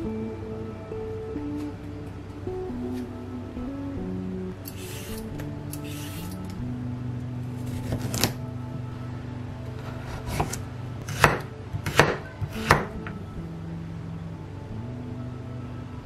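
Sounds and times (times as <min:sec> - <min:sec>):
knife chopping on cutting board: 0:10.0 - 0:13.1.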